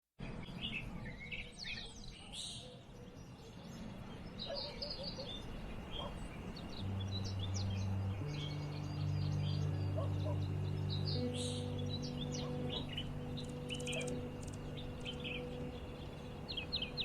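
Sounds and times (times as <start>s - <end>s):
birds chirping: 0.2s - 17.0s
low musical drone: 6.2s - 17.0s.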